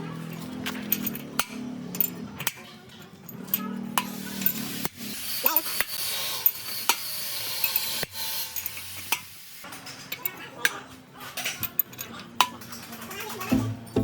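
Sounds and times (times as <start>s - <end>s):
small metal parts clicking: 0.2s - 10.4s, 11.4s - 13.5s
background music: 13.5s - 14.0s.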